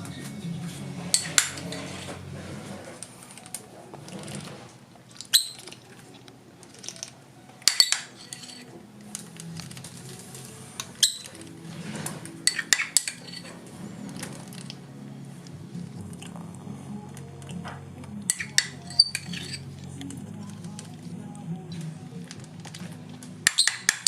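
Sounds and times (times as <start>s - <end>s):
metal spoon clinking on dish: 7.7s - 8.7s, 18.3s - 19.6s.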